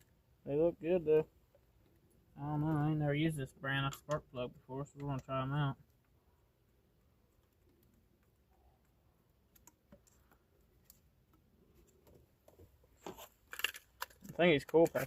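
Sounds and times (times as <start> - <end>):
clicks and taps of small parts: 7.3 - 12.7.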